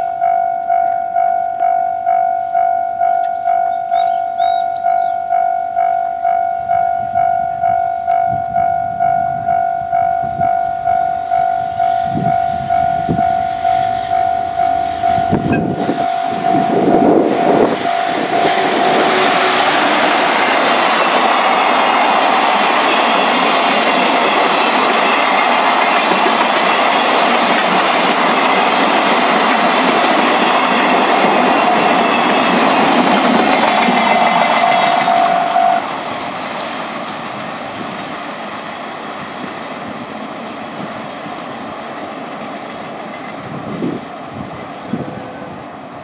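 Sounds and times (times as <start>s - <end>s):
freight train passing: 0.0s - 46.0s
wheels clacking over rail joints: 10.0s - 44.8s.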